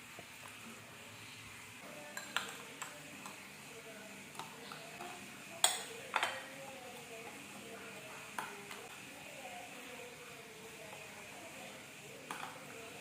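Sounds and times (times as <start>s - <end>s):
kitchenware clatter: 2.0s - 3.4s, 4.3s - 6.6s
kitchenware clinking: 2.0s - 3.4s, 4.3s - 6.6s.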